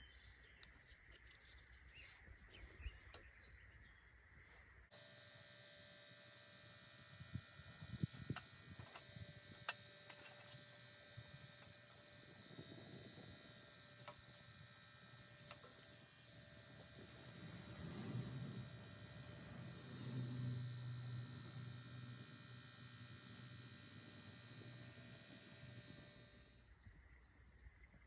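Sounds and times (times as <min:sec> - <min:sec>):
blower fan humming: 0:00.0 - 0:26.8.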